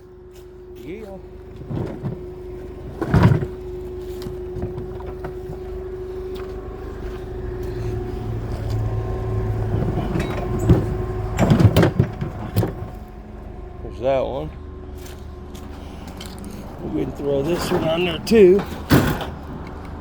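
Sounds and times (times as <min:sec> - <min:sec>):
vehicle engine humming: 0:00.0 - 0:20.0
loud metallic clunk: 0:10.0 - 0:13.1, 0:17.6 - 0:19.7.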